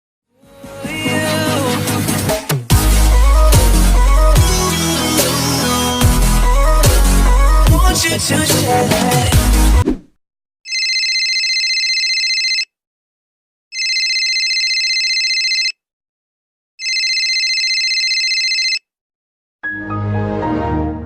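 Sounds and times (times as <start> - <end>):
telephone ringing: 10.7 - 12.7, 13.7 - 15.8, 16.8 - 18.8.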